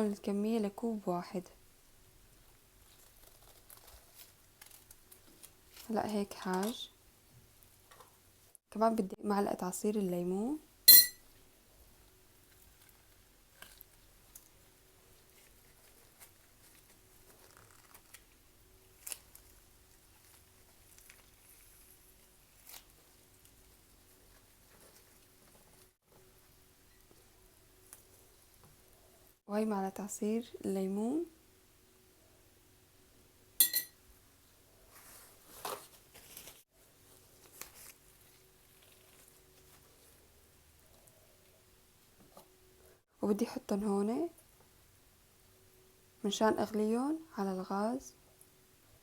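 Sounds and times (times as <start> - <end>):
soft kitchen rustles and scrapes: 11.3 - 29.4, 34.4 - 43.1
kitchen utensils clicking and tapping: 33.6 - 33.9.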